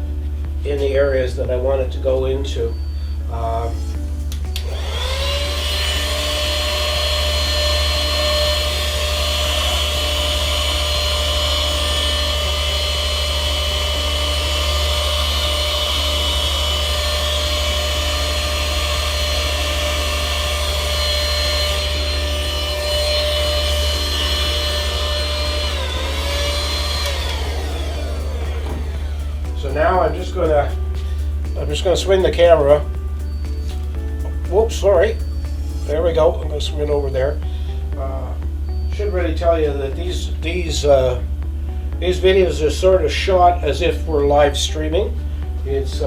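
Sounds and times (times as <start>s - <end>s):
handheld vacuum motor whine: 2.7s - 39.4s.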